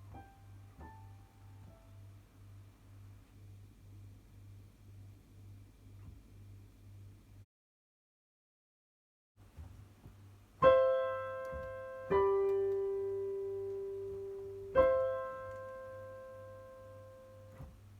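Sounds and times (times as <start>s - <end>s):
piano notes ringing: 0.0s - 2.6s, 10.6s - 17.7s
faint low hum: 0.0s - 7.4s, 9.4s - 17.9s.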